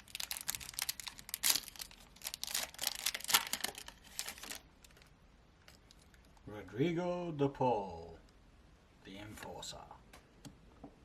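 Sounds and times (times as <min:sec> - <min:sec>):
foil wrapper tearing and crinkling: 0:00.0 - 0:05.0.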